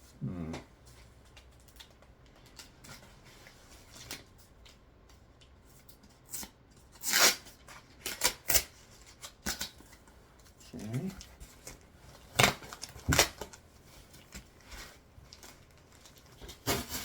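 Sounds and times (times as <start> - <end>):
tape ripping: 6.3 - 9.8.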